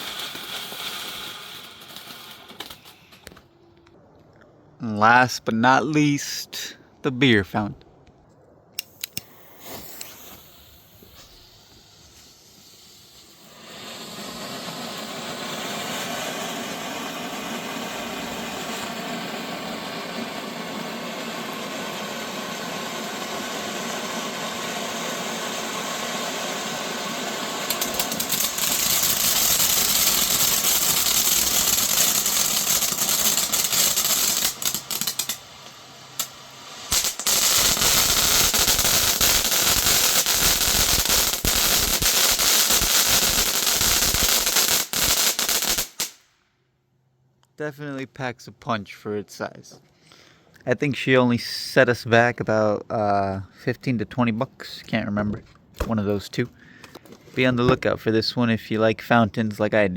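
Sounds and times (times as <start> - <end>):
firework fountain hissing: 0.0 - 3.4, 8.9 - 46.4
firework crackling: 0.0 - 3.5, 8.8 - 46.5.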